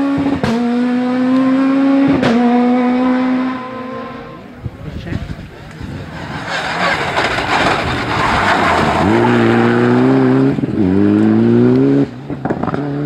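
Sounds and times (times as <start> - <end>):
car rushing past: 0.0 - 13.0
rally car engine revving: 0.0 - 13.0
exhaust cracks: 4.6 - 12.8.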